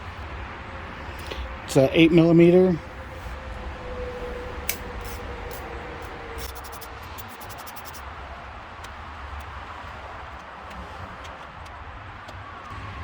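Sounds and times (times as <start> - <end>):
socket ratchet clicking: 6.4 - 8.0.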